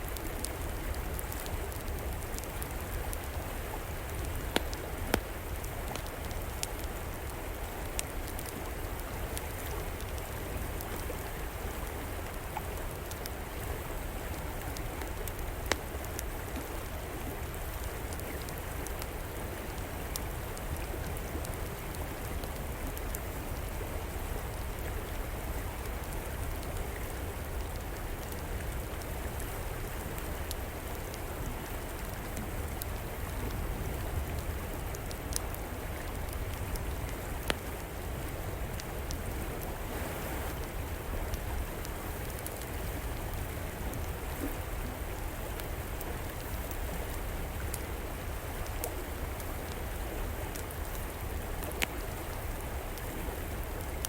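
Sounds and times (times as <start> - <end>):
wood fire crackling and popping: 0.1 - 10.9, 27.4 - 42.8
river rushing: 38.8 - 42.4.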